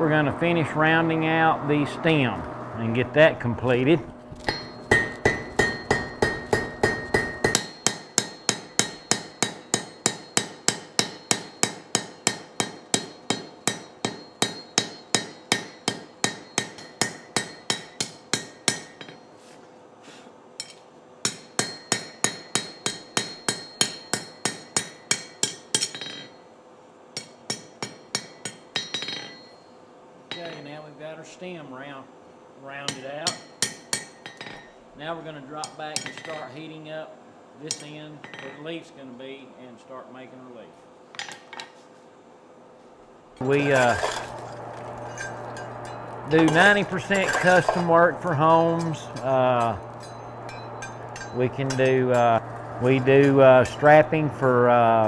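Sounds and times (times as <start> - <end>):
anvil ringing: 4.4 - 19.4, 20.6 - 26.5, 27.2 - 30.8, 43.4 - 54.8
hammer striking steel on anvil: 4.4 - 19.4, 20.6 - 26.4, 27.2 - 29.7, 32.9 - 34.8, 37.7 - 38.6, 43.4 - 55.0.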